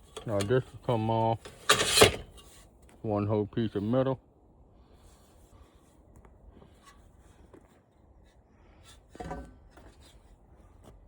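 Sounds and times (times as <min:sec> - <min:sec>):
metal parts rubbing and scraping: 0:01.4 - 0:02.6.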